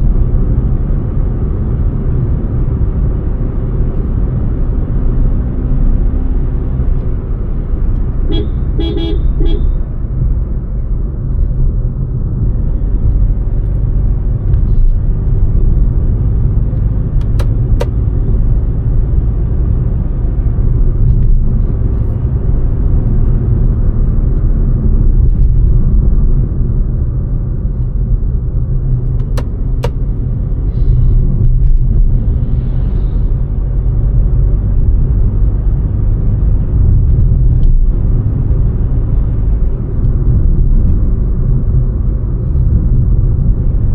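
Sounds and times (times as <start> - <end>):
car cabin road and engine rumble: 0.0 - 43.9
sharp clicks: 17.2 - 18.0, 29.1 - 30.0.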